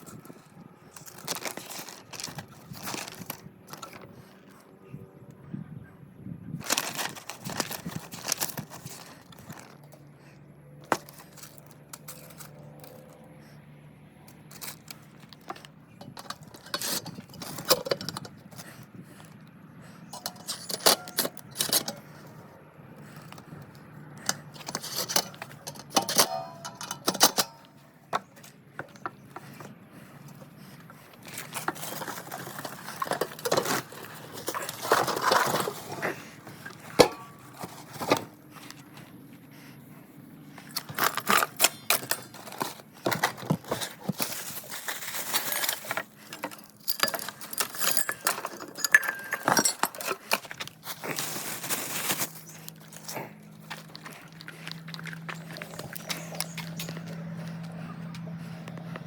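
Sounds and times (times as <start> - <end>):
small metal tools clinking: 14.5 - 18.7, 20.1 - 22.3, 24.2 - 29.0, 31.2 - 38.3, 40.7 - 57.2.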